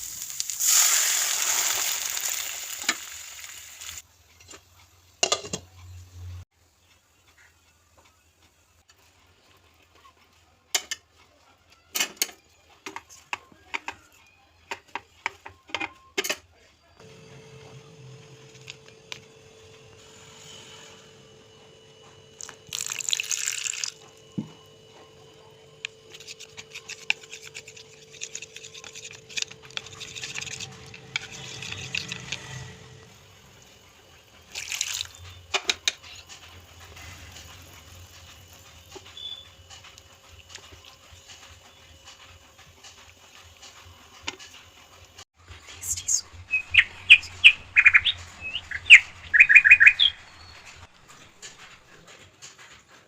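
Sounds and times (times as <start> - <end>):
utensils clinking on cookware: 5.2 - 5.8, 10.7 - 11.2, 14.8 - 16.5
liquid splashing and bubbling in pot: 22.4 - 24.0, 34.5 - 35.6.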